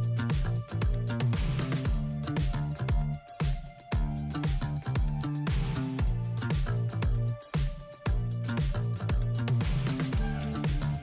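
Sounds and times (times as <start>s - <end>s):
rhythmic music with plucked guitar: 0.0s - 11.0s.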